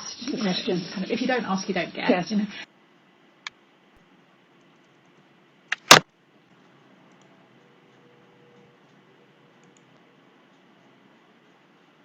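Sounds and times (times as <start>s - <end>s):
faint steady hiss: 0.0s - 12.0s
sharp mouse clicks: 5.7s - 6.0s.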